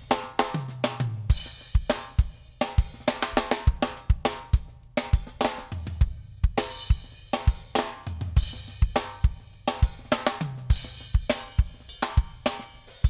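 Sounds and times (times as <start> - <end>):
drum kit beat: 0.0 - 13.0
cymbals: 6.6 - 13.0.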